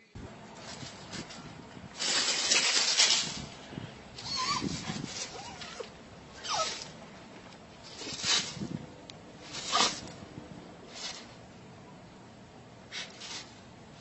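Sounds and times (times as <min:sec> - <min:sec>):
pet animal cries: 0:04.2 - 0:06.9.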